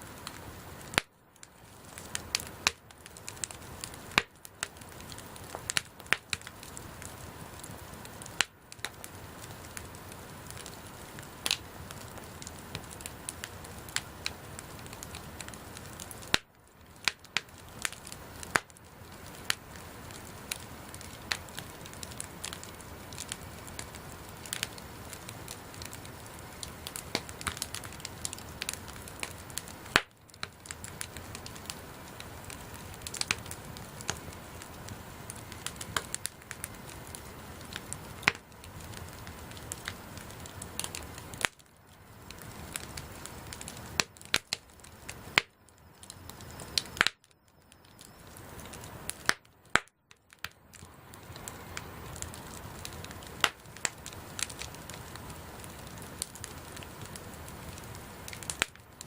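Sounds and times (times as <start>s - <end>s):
bonfire crackling and popping: 0.0s - 59.0s
low hiss of flames: 0.0s - 59.0s.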